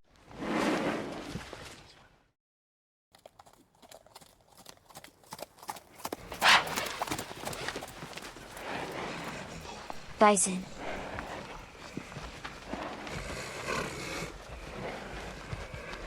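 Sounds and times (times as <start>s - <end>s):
bison hooves thudding on ground: 4.7s - 16.0s.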